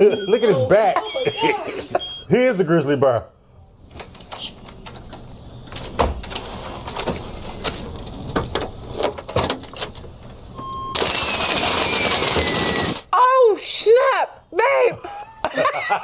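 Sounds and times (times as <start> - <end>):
firework hissing and whistling: 3.8 - 13.1.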